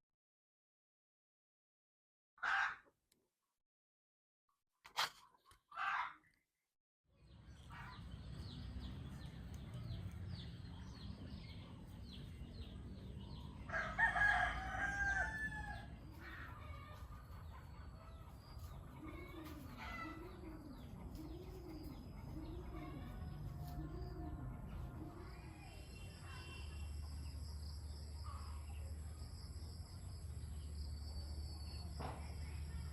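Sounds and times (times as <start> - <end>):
small birds chirping: 7.1 - 32.9
rooster crowing: 13.7 - 15.9.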